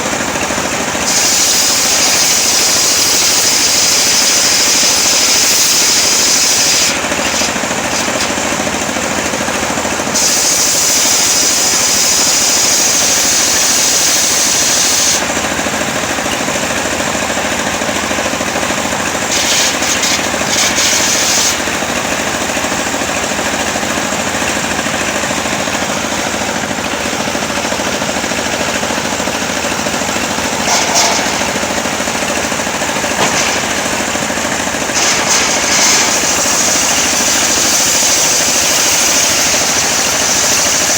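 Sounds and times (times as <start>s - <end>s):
sawmill engine running: 0.0s - 40.9s
saw blade cutting whine: 0.9s - 15.4s, 17.9s - 22.5s, 27.5s - 40.9s.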